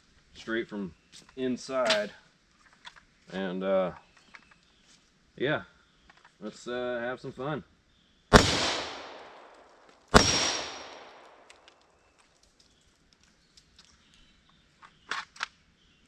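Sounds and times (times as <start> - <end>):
rifle shots echoing: 8.3 - 11.7.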